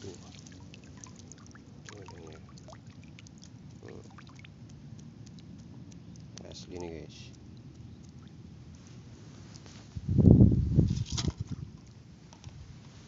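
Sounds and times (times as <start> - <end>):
shallow water sloshing: 0.0 - 9.7.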